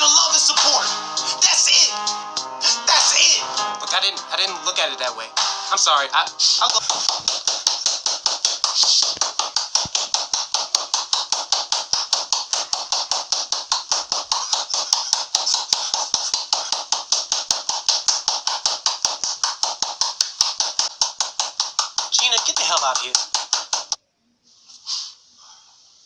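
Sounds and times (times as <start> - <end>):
rapid even tapping: 6.3 - 24.0.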